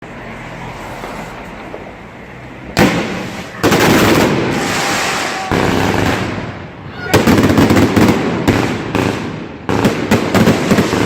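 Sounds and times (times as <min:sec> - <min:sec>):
dense rush of noise: 0:00.0 - 0:09.7
fireworks bangs: 0:02.7 - 0:11.0.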